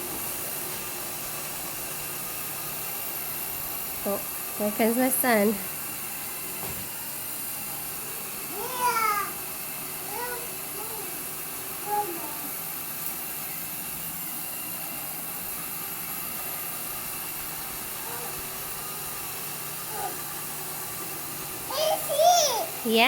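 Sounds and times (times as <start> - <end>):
robot vacuum hissing: 0.0 - 23.0
toddler babbling: 8.5 - 9.4, 10.1 - 11.2, 11.8 - 12.5, 18.0 - 18.4, 19.9 - 20.2, 21.7 - 22.8.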